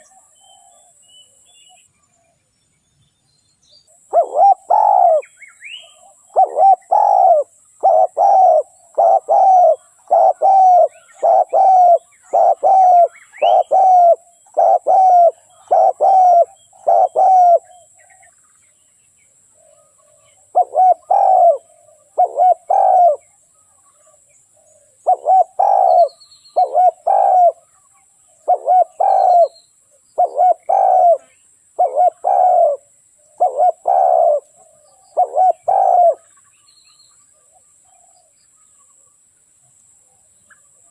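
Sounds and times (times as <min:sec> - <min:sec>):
small birds chirping faintly: 0:00.0 - 0:40.9
dove cooing: 0:04.0 - 0:18.2, 0:19.6 - 0:23.4, 0:24.0 - 0:29.6, 0:30.2 - 0:36.4.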